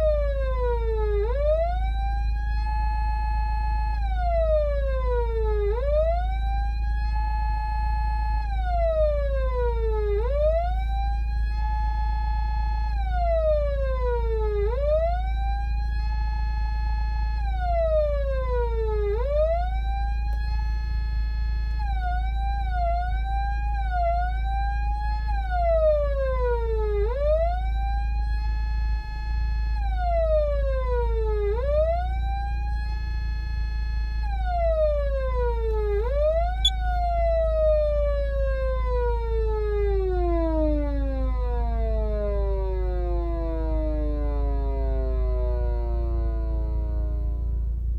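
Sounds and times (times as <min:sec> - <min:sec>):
electronic siren wail: 0:00.0 - 0:47.8
steady low hum: 0:45.5 - 0:47.9.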